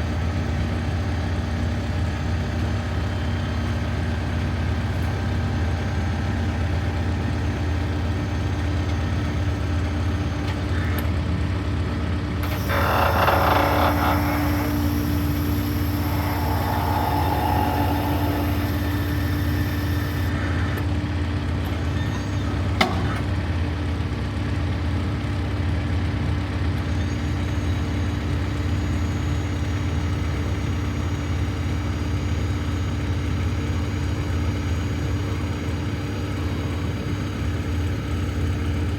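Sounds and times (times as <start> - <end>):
diesel engine running: 0.0 - 24.4
steady hum: 12.4 - 20.7.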